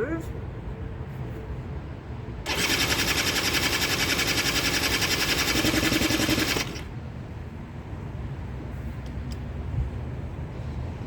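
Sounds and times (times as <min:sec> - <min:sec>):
quad engine running: 0:02.5 - 0:06.9.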